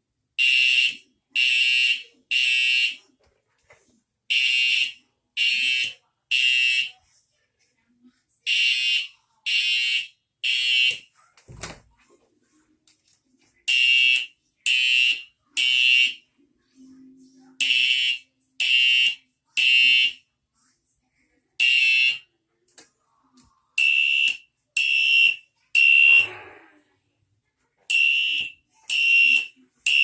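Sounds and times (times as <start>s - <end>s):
fire alarm horn blasts: 23.8s - 26.6s.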